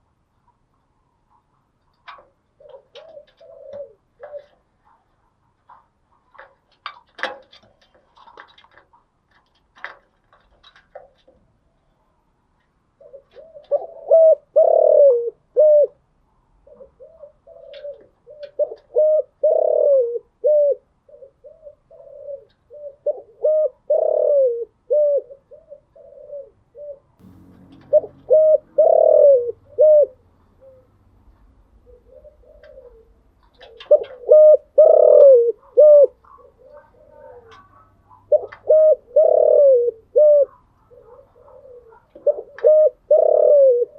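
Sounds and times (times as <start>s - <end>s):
dove cooing: 2.1s - 5.1s, 13.0s - 43.9s.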